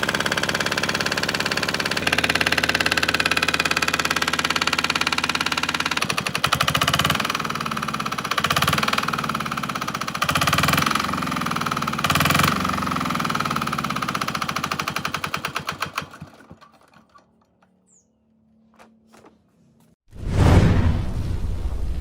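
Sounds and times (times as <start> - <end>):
diesel engine knocking: 0.0 - 16.7.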